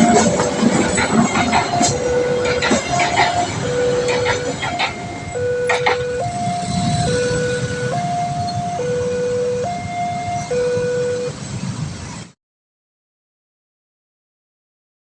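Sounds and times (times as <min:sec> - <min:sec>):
level crossing two-tone alarm: 0:00.0 - 0:11.4.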